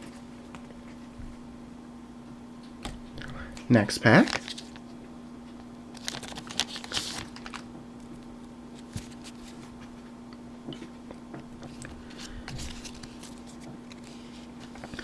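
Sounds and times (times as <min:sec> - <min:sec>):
faint steady hum: 0:00.0 - 0:15.0
foil pack crinkling and tearing: 0:04.2 - 0:04.8, 0:05.9 - 0:07.7, 0:12.0 - 0:15.0
cards rustling: 0:05.9 - 0:08.2, 0:08.8 - 0:09.9, 0:11.7 - 0:15.0.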